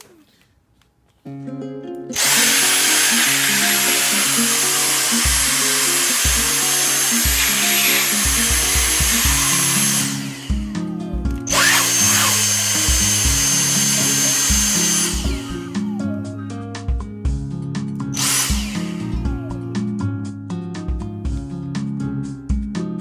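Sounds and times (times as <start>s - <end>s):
background music with steady beat: 1.3s - 23.0s
vacuum cleaner motor whining: 2.2s - 10.6s, 11.5s - 16.0s, 18.2s - 19.2s.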